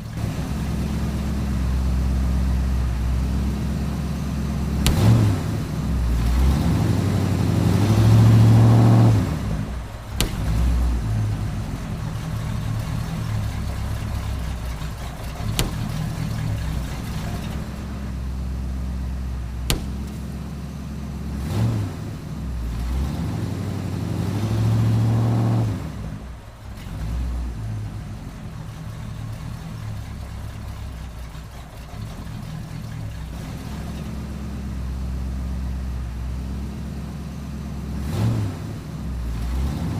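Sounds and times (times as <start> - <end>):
car engine revving: 0.0 - 39.9
sharp engine pops: 4.6 - 6.6, 8.6 - 18.8, 19.4 - 21.8.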